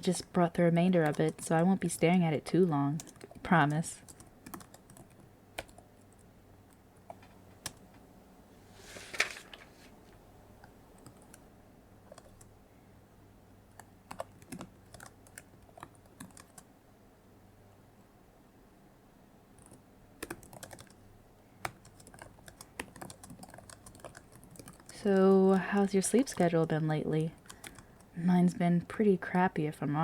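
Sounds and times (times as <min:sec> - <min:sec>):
computer keyboard typing: 0:00.1 - 0:02.0, 0:02.9 - 0:07.9, 0:10.6 - 0:12.5, 0:13.7 - 0:16.7, 0:19.6 - 0:21.0, 0:21.6 - 0:28.1.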